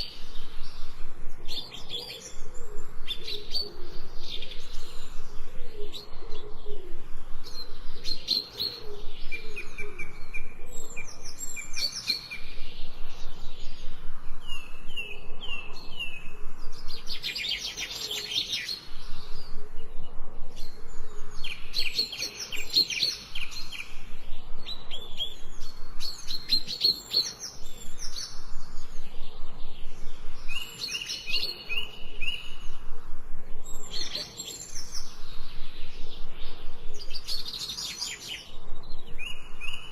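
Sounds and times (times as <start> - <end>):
birds chirping and singing: 0.0 - 39.9.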